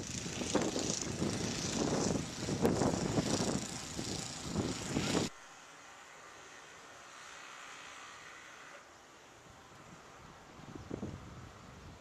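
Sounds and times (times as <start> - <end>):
snowblower engine running: 0.0 - 8.8.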